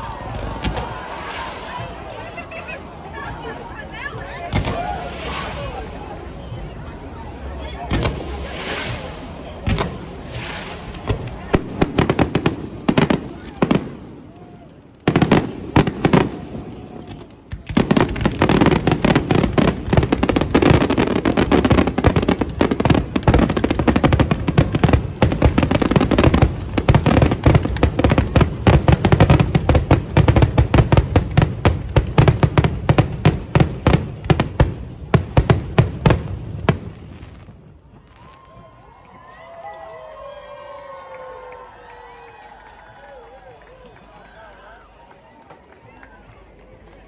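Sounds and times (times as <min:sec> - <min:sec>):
fireworks bangs and crackles: 0:00.0 - 0:39.8.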